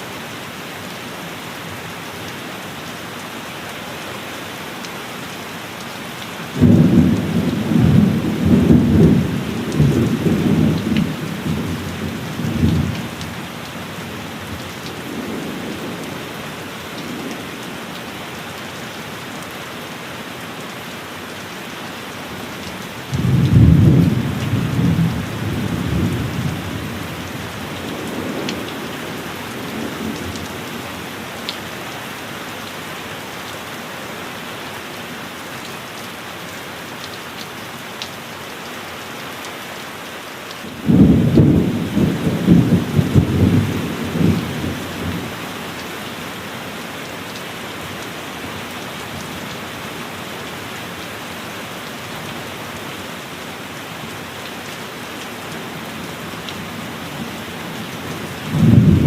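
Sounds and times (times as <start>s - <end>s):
heavy rain on a roof: 0.0s - 59.0s
thunder rumbling: 6.6s - 13.4s, 40.8s - 45.3s, 58.5s - 59.0s.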